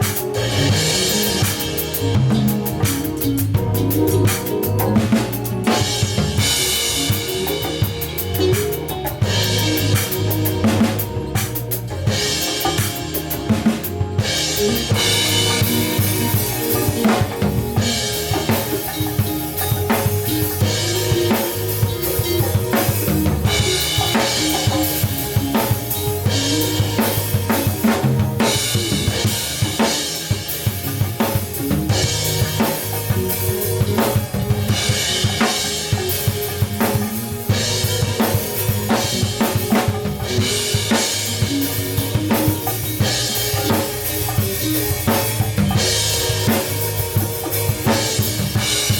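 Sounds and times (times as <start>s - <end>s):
band playing live: 0.0s - 48.9s.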